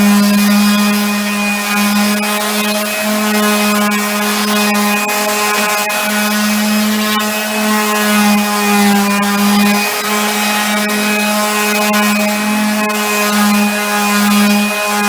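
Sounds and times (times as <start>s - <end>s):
power sander on wood: 0.0s - 15.0s.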